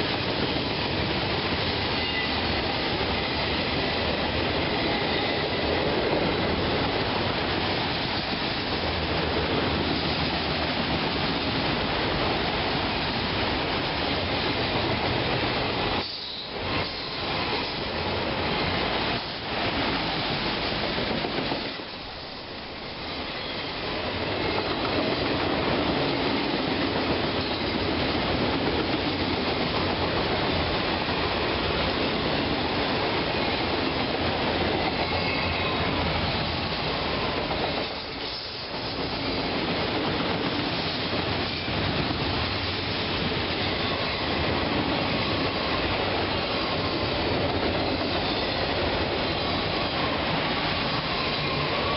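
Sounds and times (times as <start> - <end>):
train wheels clattering over rails: 0.0 - 51.9
train wheel squeal: 1.5 - 6.1, 15.9 - 18.0, 21.3 - 25.3, 27.3 - 28.0, 32.1 - 39.7, 40.5 - 51.9.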